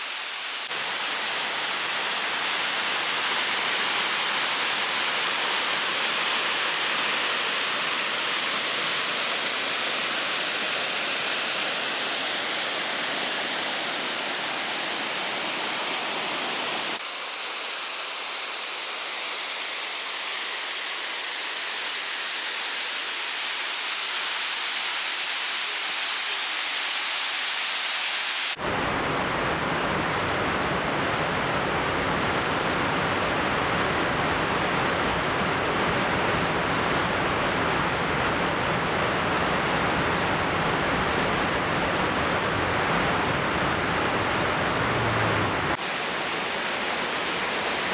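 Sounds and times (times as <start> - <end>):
waterfall rushing: 0.0 - 1.4, 2.2 - 28.6, 45.8 - 47.9.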